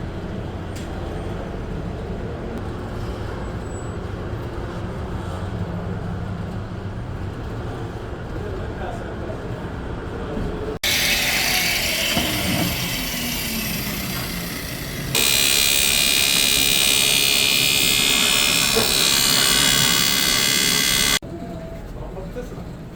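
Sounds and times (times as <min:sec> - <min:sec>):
high-pitched machine whine: 0:10.8 - 0:21.2
workshop machinery rushing noise: 0:10.8 - 0:21.2.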